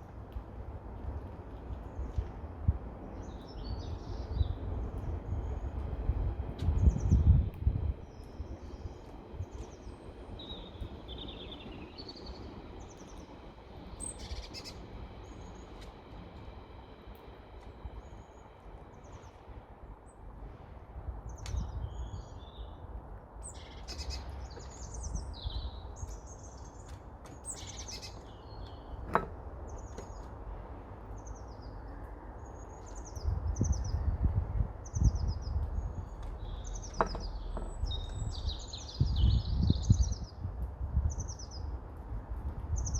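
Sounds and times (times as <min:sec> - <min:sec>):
small birds chirping: 0:08.1 - 0:17.2, 0:23.4 - 0:29.0, 0:31.1 - 0:41.8, 0:42.7 - 0:42.9.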